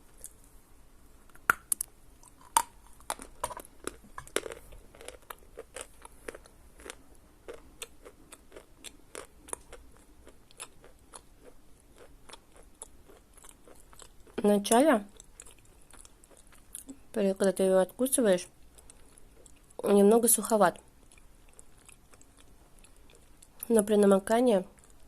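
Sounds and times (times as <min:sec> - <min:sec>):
dry chewing crunches: 0:01.3 - 0:14.4, 0:15.1 - 0:17.0, 0:18.7 - 0:19.8, 0:20.8 - 0:23.7.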